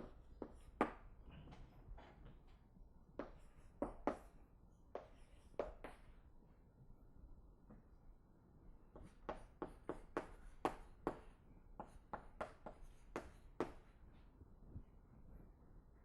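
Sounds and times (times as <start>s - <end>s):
writing taps on board: 3.2s - 4.3s, 9.0s - 13.8s.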